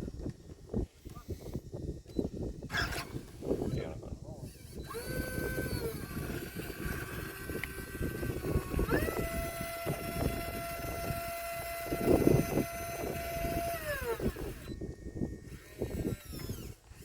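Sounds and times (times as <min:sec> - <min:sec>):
electric motor whining: 0:04.4 - 0:17.0.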